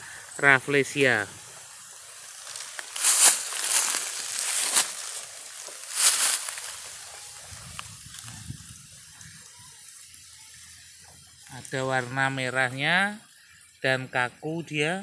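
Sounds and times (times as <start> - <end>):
dry leaves rustling and crackling: 0.4 - 13.5.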